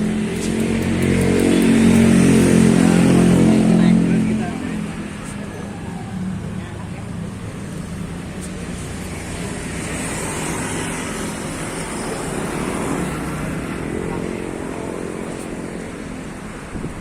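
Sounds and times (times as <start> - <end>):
road traffic hum: 0.0 - 17.0
vehicle engine passing: 0.0 - 17.0.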